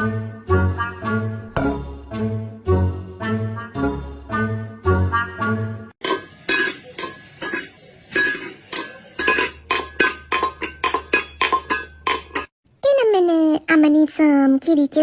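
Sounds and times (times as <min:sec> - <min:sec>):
utensil clinking against dish: 0:06.0 - 0:12.5.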